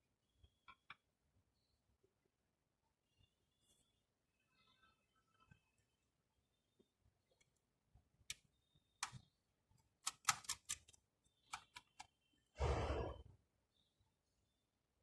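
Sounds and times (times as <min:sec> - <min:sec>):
small hard parts clicking: 0:10.0 - 0:12.1.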